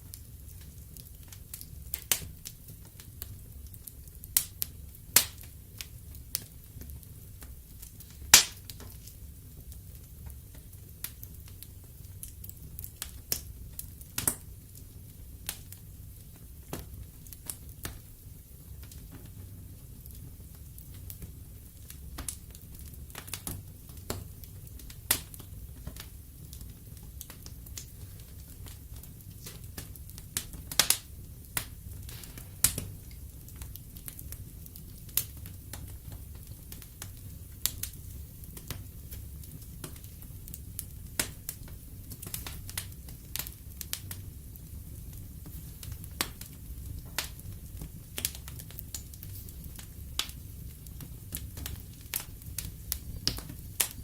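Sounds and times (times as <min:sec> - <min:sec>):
wood fire crackling and popping: 0:00.0 - 0:54.0.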